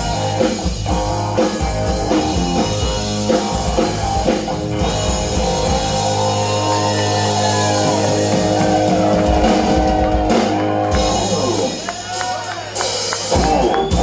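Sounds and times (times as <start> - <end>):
electric guitar notes bending: 0.0 - 12.0.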